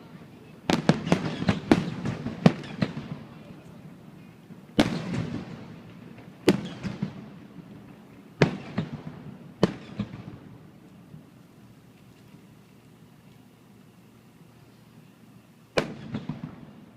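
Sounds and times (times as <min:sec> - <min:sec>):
firework shells bursting: 0:00.7 - 0:03.2, 0:15.7 - 0:16.8
small firework pops: 0:00.7 - 0:03.8, 0:04.7 - 0:11.3, 0:11.9 - 0:13.5, 0:15.7 - 0:16.8.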